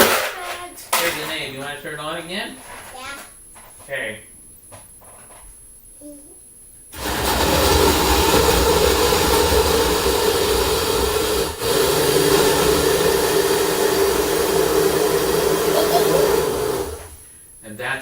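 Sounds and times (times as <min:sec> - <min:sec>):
blender blending ice: 0:07.0 - 0:17.2.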